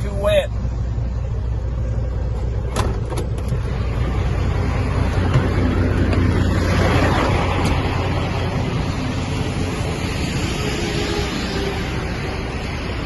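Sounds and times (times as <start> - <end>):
diesel engine idling: 0.0 - 13.0
sharp clicks and knocks: 5.1 - 6.3.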